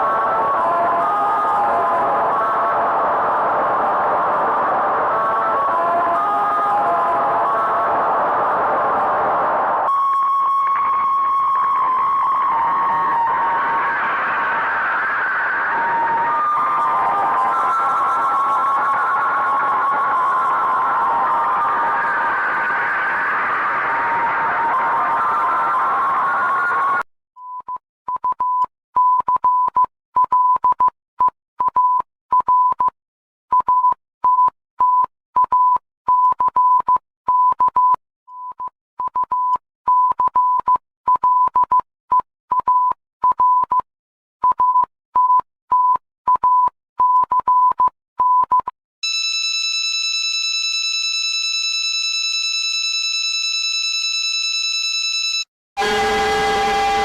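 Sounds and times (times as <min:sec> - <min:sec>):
buzzy alarm tone: 0:55.8 - 0:57.0.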